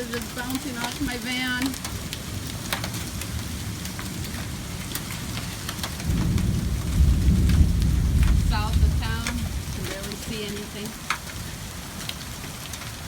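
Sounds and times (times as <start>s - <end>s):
hail ticking on metal: 0.0s - 13.0s
heavy rain hiss: 0.0s - 13.0s
deep low rumble: 6.1s - 10.4s.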